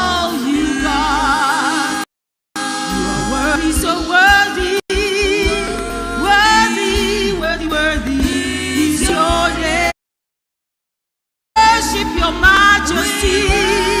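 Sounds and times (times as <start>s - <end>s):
gospel singing with vibrato: 0.0s - 10.0s, 11.6s - 14.0s
backing music with low beat: 2.8s - 9.9s.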